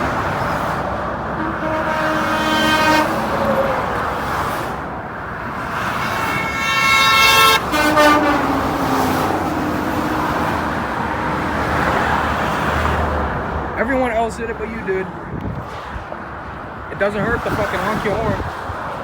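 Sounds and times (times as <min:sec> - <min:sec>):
truck horn honking: 0:00.0 - 0:12.4
highway road noise: 0:00.0 - 0:19.0.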